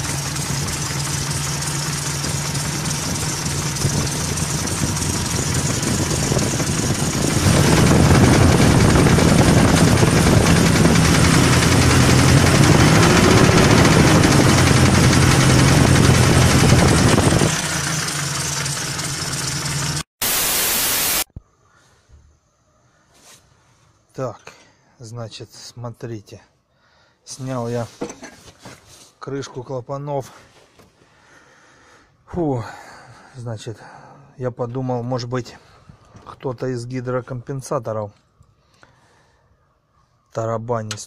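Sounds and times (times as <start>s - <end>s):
petrol engine running with knock: 0.0s - 20.0s.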